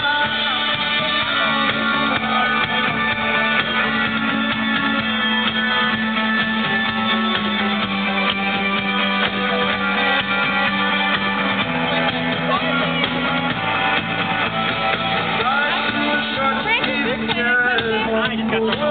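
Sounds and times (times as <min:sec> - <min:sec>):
bass line: 0:00.0 - 0:18.9
strummed guitars: 0:00.0 - 0:18.9.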